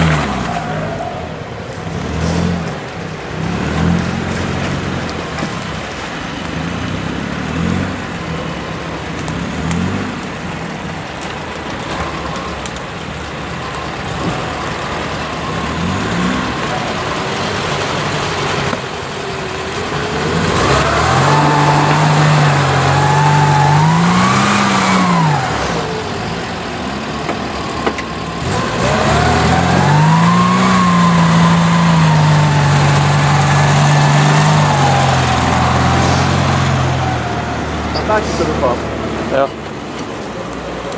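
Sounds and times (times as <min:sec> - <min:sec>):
off-road vehicle engine revving: 0:00.0 - 0:12.5, 0:13.6 - 0:40.9.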